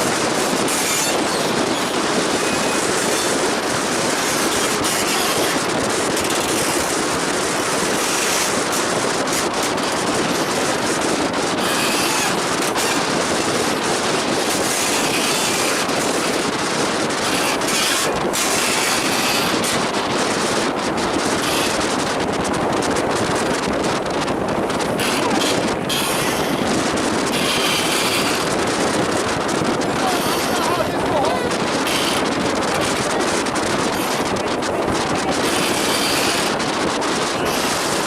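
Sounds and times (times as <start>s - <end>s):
choppy waves: 0.0s - 38.0s
gale-force wind rushing: 0.0s - 38.0s.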